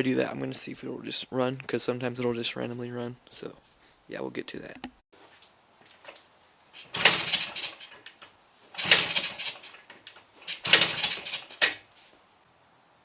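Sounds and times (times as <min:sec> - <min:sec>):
engine turning over not catching: 0:06.8 - 0:08.0, 0:08.8 - 0:11.8
motorcycle kickstarter clatter: 0:06.8 - 0:11.9.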